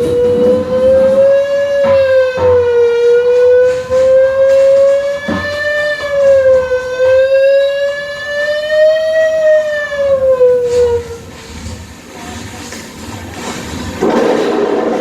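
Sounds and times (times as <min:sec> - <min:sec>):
siren-like whistling tone: 0:00.0 - 0:11.3.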